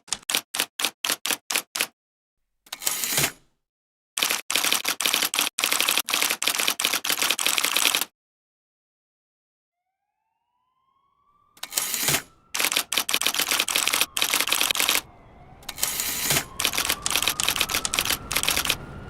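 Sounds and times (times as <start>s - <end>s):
typewriter keys clacking: 0.0s - 1.9s, 4.2s - 8.1s, 11.6s - 15.0s, 15.7s - 18.8s
typewriter carriage rasping slide: 2.8s - 3.4s, 11.6s - 15.0s, 15.7s - 18.8s.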